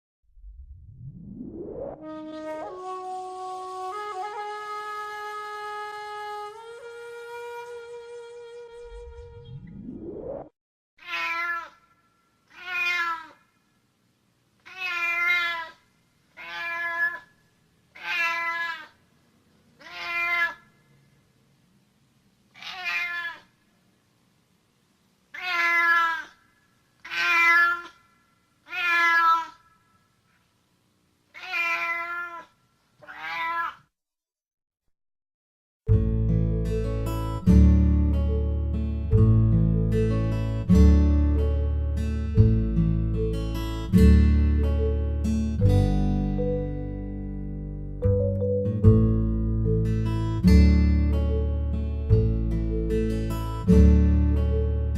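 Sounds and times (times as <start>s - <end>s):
cat meowing: 11.0s - 11.8s, 12.5s - 13.4s, 14.6s - 15.8s, 16.4s - 17.3s, 18.0s - 19.0s, 19.8s - 20.6s, 22.6s - 23.5s, 25.3s - 26.4s, 27.0s - 28.0s, 28.6s - 29.7s, 31.3s - 33.9s.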